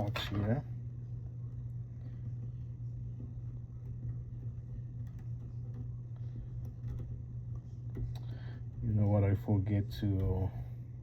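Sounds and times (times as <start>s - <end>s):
low electrical hum: 0.0s - 11.0s.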